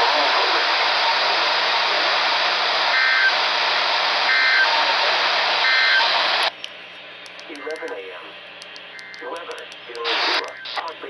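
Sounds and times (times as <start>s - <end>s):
radio static hiss: 0.0s - 11.0s
digital data bursts: 8.9s - 11.0s.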